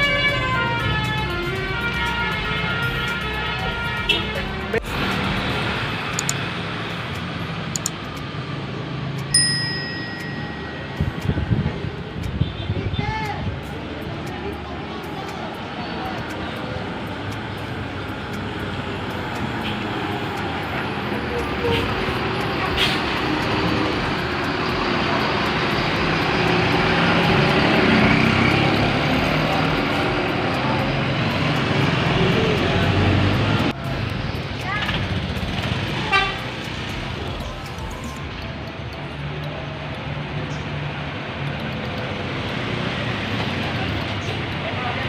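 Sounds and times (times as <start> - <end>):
road traffic noise: 0.0 - 45.0
bus driving past: 4.7 - 9.4, 10.0 - 45.0
metallic ding: 9.3 - 11.2.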